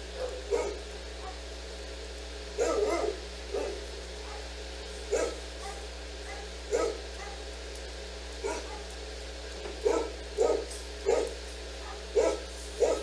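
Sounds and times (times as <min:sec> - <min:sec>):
steady low hum: 0:00.0 - 0:13.0
dog barking: 0:00.1 - 0:01.5, 0:02.6 - 0:07.5, 0:08.4 - 0:09.0, 0:09.8 - 0:13.0.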